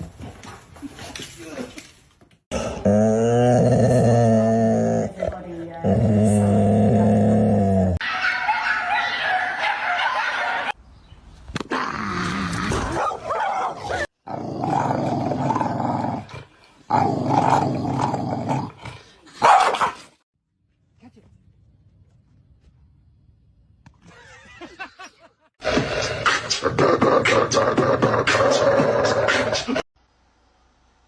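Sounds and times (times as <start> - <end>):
dogs barking: 8.0 - 10.8, 12.9 - 14.1, 19.4 - 20.0.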